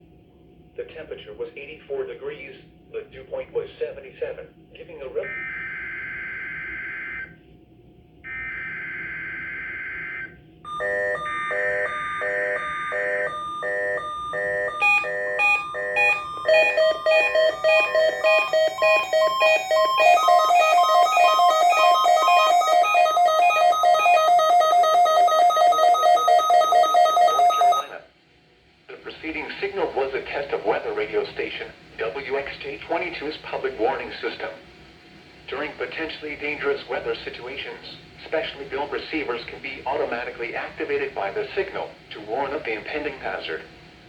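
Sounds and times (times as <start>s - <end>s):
pulsing multi-tone alarm beeping: 5.2s - 7.4s, 8.3s - 28.0s
two-tone digital buzz bursts: 8.3s - 25.0s.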